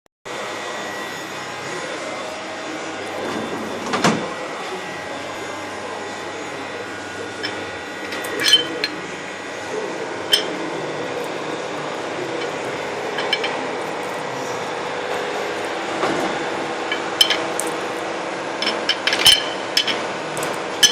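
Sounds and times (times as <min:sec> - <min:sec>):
milling machine running: 0:00.3 - 0:20.9
metallic clinks and knocks: 0:07.4 - 0:09.0, 0:10.3 - 0:10.6, 0:13.2 - 0:13.6, 0:16.9 - 0:17.8, 0:18.6 - 0:20.0.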